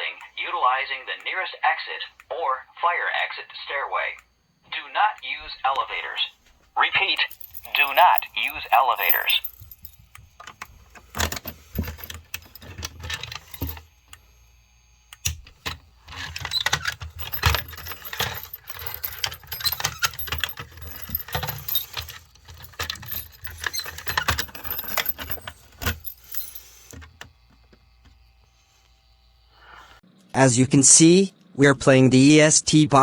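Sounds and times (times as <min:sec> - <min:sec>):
keys jangling: 0:06.9 - 0:13.8, 0:16.2 - 0:27.1
handling knocks and rattles: 0:07.0 - 0:13.8, 0:16.1 - 0:27.2.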